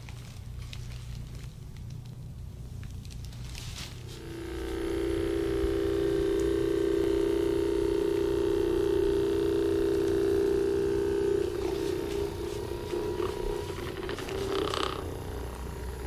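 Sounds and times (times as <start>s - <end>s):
electric massager buzzing: 3.8s - 16.0s.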